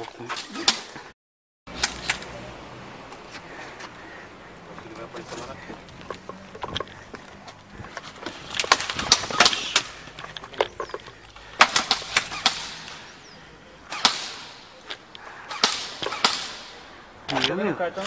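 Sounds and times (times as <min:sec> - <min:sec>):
airsoft guns firing bursts: 0:11.5 - 0:13.1, 0:13.9 - 0:14.8, 0:15.4 - 0:16.9.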